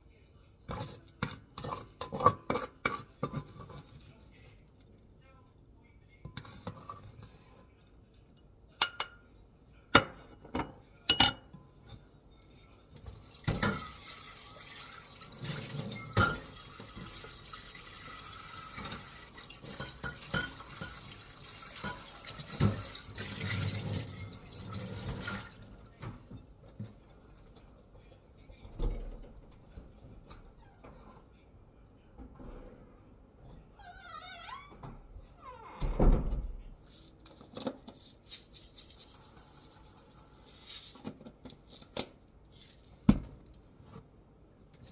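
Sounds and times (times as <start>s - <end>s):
dishes clinking: 8.8s - 9.2s, 10.0s - 14.0s, 15.5s - 17.2s, 18.7s - 25.2s.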